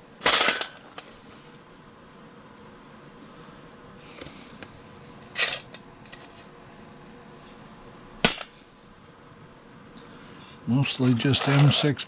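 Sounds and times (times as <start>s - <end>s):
small metal parts clacking: 11.0s - 12.0s.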